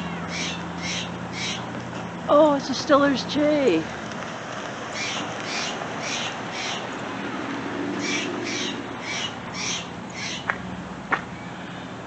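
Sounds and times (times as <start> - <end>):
jay harsh calls: 0.3 - 1.7, 5.0 - 6.9, 8.0 - 10.5.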